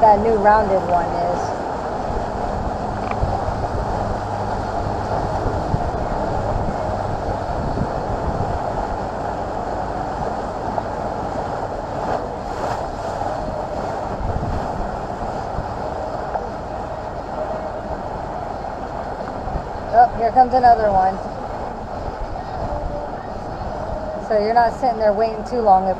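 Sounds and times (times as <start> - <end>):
boat engine humming: 0.0 - 25.9
water rushing past hull: 0.0 - 25.9
wind buffeting microphone: 0.0 - 25.9.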